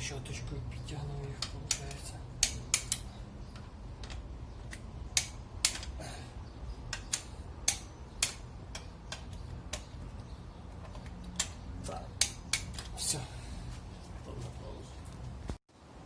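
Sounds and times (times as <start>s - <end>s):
ratchet wrench clicking: 1.4s - 3.2s, 4.0s - 6.0s, 6.9s - 9.9s, 12.2s - 12.9s.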